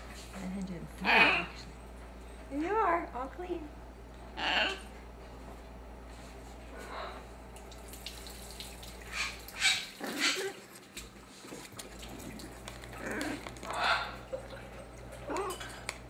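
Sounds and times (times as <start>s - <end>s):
macaw squawking: 4.4s - 4.9s, 9.1s - 10.4s.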